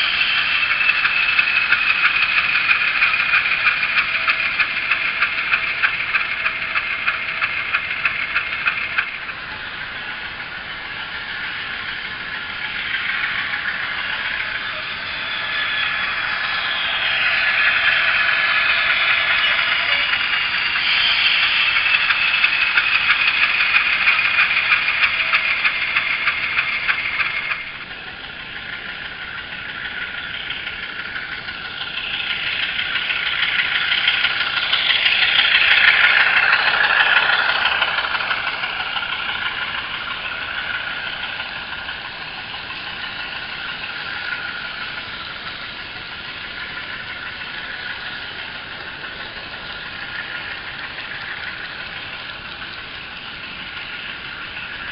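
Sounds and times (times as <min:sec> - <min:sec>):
diesel locomotive engine sound from speaker: 0:00.0 - 0:54.9
steady high tone: 0:09.1 - 0:52.6.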